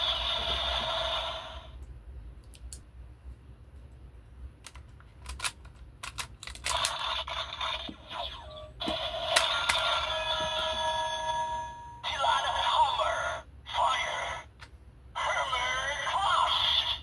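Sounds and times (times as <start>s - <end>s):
plastic toy clicks: 4.7s - 7.0s
toy electronic sound effects: 6.8s - 14.5s, 15.2s - 17.0s.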